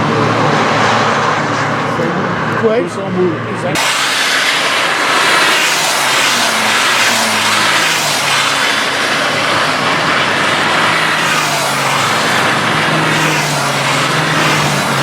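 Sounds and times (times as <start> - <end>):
race car engine running: 0.0 - 15.0
water spray hiss: 3.8 - 9.2.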